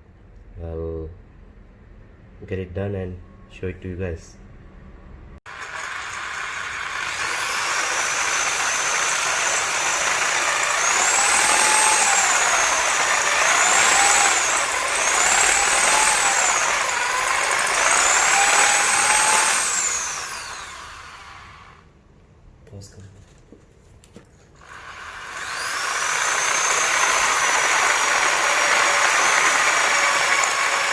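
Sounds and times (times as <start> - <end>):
electric drill boring into concrete: 5.5 - 21.8, 24.6 - 30.9.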